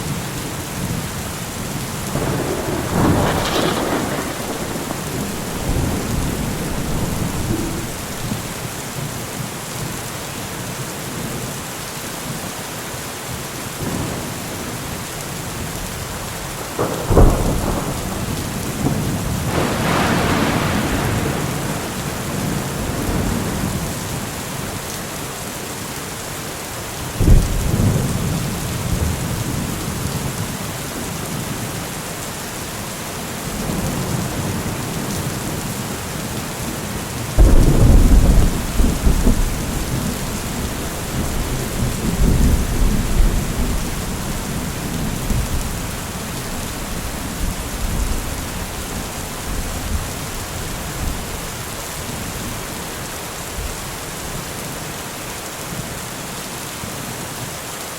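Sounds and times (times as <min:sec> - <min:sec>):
steady rainfall: 0:00.0 - 0:57.9
thunder rumbling: 0:00.2 - 0:08.8, 0:15.9 - 0:24.2, 0:37.3 - 0:52.7
thunderclap: 0:02.1 - 0:08.7, 0:16.6 - 0:23.9, 0:37.4 - 0:52.6.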